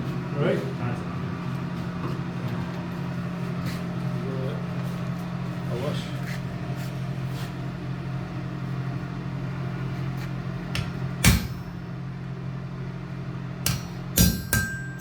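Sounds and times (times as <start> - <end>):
steady low hum: 0.0 - 15.0
hammer ringing on steel anvil: 13.6 - 15.0.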